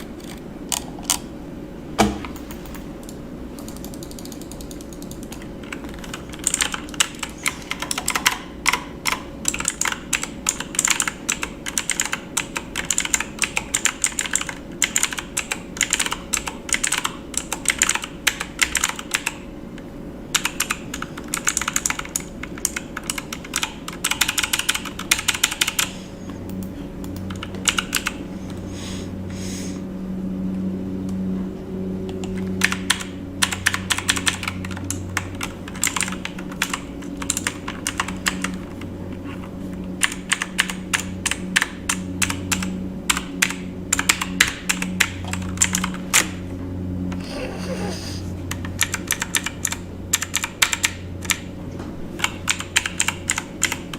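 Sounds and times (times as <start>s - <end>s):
low hum: 0.0s - 52.8s
typing on computer keyboard: 3.0s - 19.4s, 20.3s - 25.9s, 26.5s - 28.2s, 32.1s - 38.8s, 40.0s - 46.4s, 48.5s - 51.4s, 52.2s - 53.9s.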